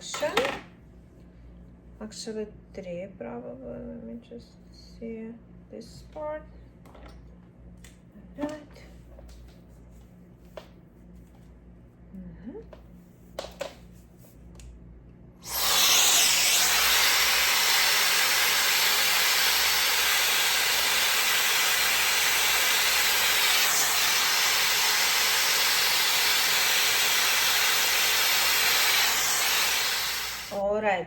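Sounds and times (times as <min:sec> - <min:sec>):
hair air styler blowing: 0:15.4 - 0:30.7.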